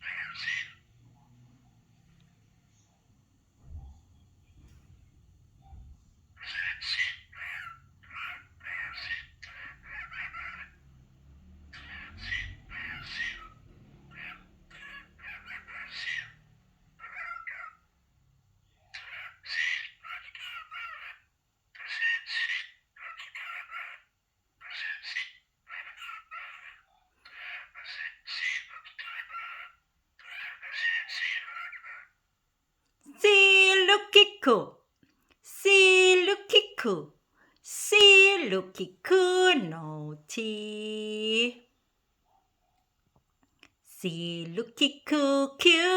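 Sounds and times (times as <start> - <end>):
cockatiel chattering: 6.4 - 10.7, 11.8 - 16.4, 17.0 - 17.8, 18.9 - 24.0, 24.6 - 32.1.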